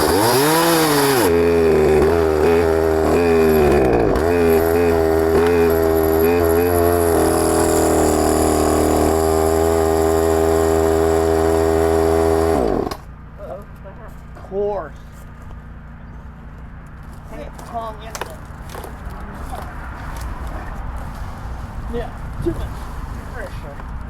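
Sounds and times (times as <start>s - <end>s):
gasoline chainsaw revving: 0.0s - 13.1s.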